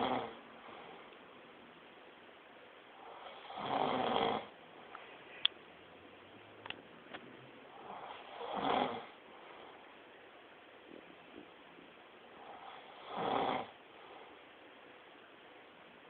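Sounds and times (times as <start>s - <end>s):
man snoring: 0.0s - 0.4s, 3.0s - 4.5s, 7.7s - 9.2s, 12.4s - 13.8s.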